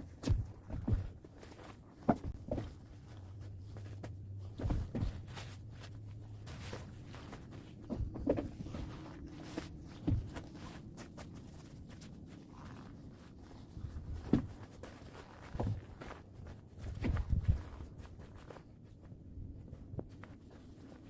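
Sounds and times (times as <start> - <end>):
knocks and thumps of gear: 0.0 - 2.9, 4.5 - 5.4, 7.8 - 8.9, 9.5 - 10.5, 15.4 - 16.2
low steady rumble: 0.0 - 21.0
tent fabric rustling: 0.0 - 21.0.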